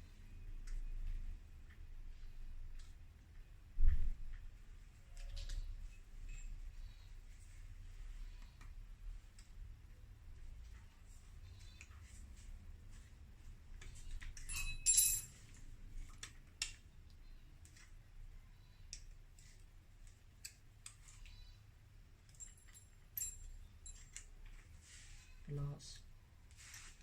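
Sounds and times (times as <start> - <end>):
ringing metal clink: 14.4 - 15.4, 22.3 - 24.2
metal parts and tools clinking: 14.4 - 15.6, 22.2 - 24.6.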